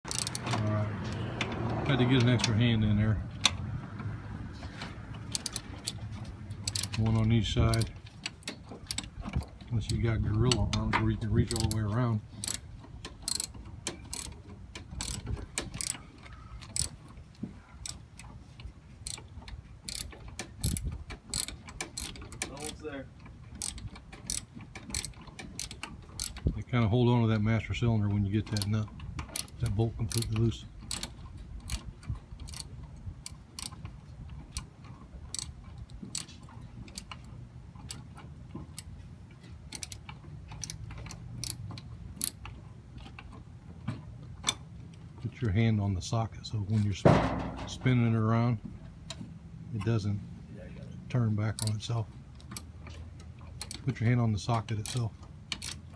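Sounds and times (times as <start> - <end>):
socket ratchet clicking: 0.0 - 0.6, 5.2 - 6.0, 6.6 - 9.5, 11.4 - 12.6, 13.2 - 16.0, 16.6 - 17.0, 19.0 - 22.8, 23.6 - 26.5, 29.3 - 32.7, 33.3 - 33.8, 35.3 - 35.5, 39.7 - 41.6, 42.2 - 42.4, 51.6 - 51.8, 54.8 - 55.9.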